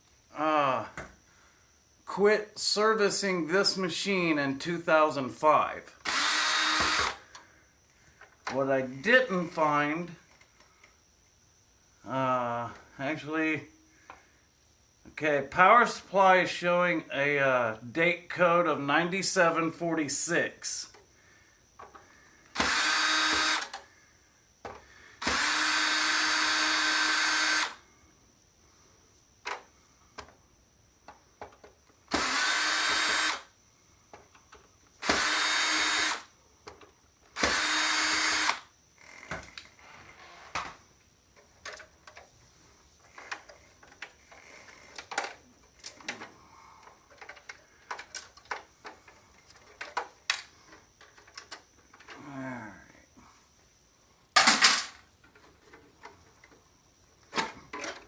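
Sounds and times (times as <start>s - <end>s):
cordless drill motor: 6.0s - 7.5s, 22.4s - 23.9s, 25.1s - 27.8s, 32.1s - 33.6s, 35.0s - 36.4s, 37.3s - 40.4s
parts and screws clattering: 41.4s - 42.3s, 43.0s - 52.2s, 54.4s - 58.0s.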